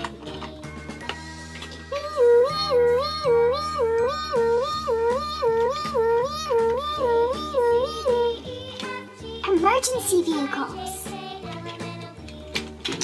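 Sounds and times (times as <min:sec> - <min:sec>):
background music: 0:00.0 - 0:13.0.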